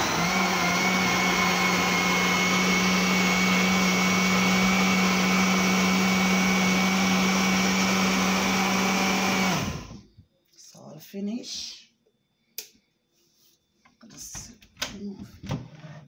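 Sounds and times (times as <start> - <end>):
electric blender running: 0.0 - 10.0.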